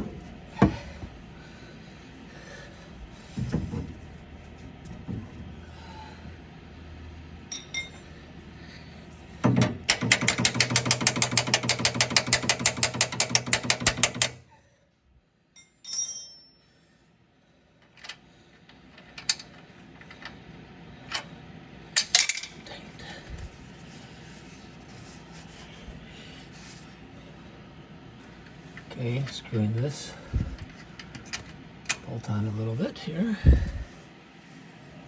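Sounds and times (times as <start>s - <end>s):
power tool clattering: 9.6s - 14.4s
sharp metallic clicks and taps: 9.9s - 14.4s.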